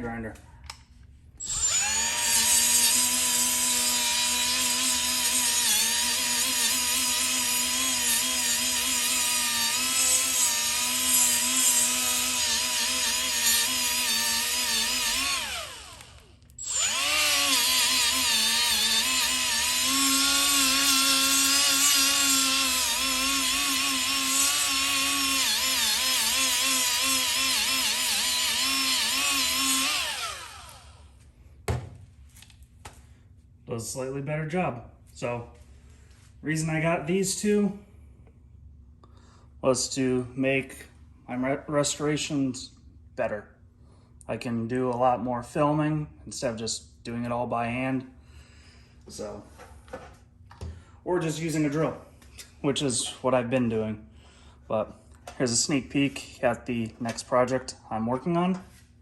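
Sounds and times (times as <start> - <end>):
die grinder whining on metal: 1.4 - 31.1.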